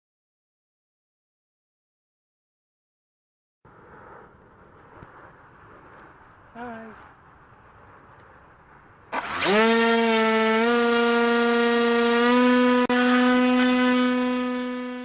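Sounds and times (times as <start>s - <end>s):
model plane motor whining: 9.1s - 15.0s.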